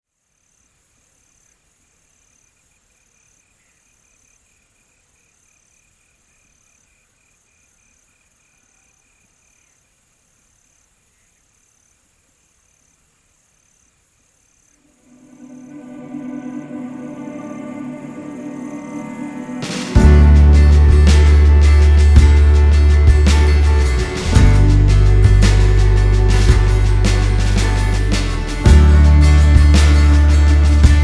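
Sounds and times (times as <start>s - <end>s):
low fast pulsing insect call: 0.0s - 30.8s
insect chirping: 0.1s - 24.4s
high insect trill: 0.1s - 31.0s.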